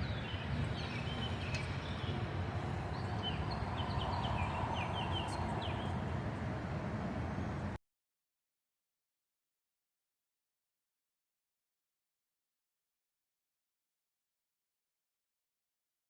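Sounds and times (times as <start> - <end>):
birds chirping: 0.0 - 6.6
steady low rumble: 0.0 - 7.8.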